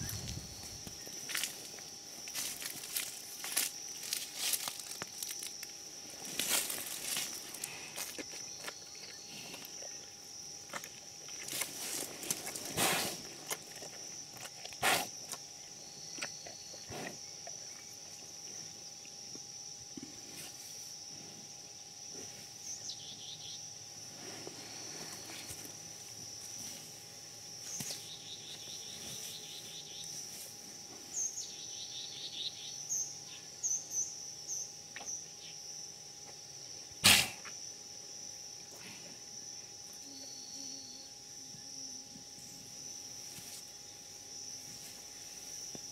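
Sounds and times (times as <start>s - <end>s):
scuffs and rustles in sawdust: 0.0s - 8.5s, 11.4s - 13.4s
high insect drone: 0.0s - 45.9s.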